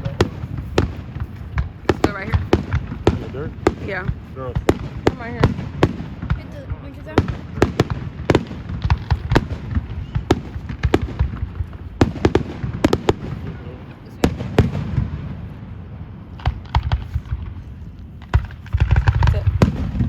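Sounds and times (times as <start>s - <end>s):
echoing booms: 0.0s - 20.0s
fireworks bangs and pops: 0.0s - 20.0s.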